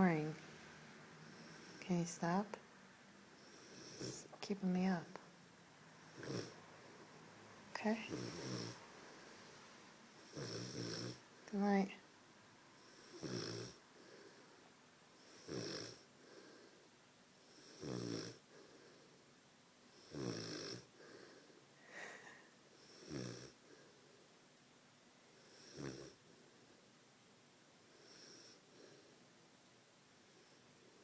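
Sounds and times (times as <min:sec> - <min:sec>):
puppy snoring: 0:01.2 - 0:02.4, 0:03.4 - 0:05.2, 0:06.0 - 0:07.0, 0:07.7 - 0:09.2, 0:10.2 - 0:11.2, 0:12.8 - 0:14.4, 0:15.2 - 0:16.8, 0:17.4 - 0:19.1, 0:19.9 - 0:22.0, 0:22.7 - 0:24.0, 0:25.4 - 0:26.2, 0:27.9 - 0:29.1.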